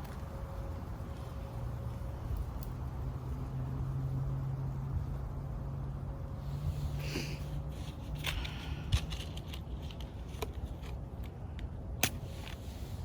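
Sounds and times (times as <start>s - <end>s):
twig stove clicks and crackles: 2.3s - 2.8s, 7.8s - 12.6s.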